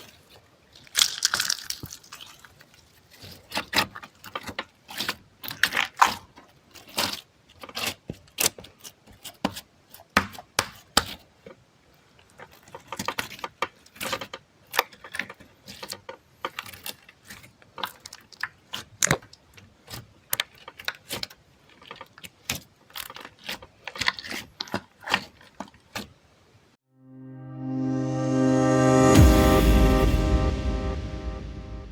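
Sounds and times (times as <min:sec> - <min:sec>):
crisp handling clicks and crackles: 0:12.2 - 0:26.1.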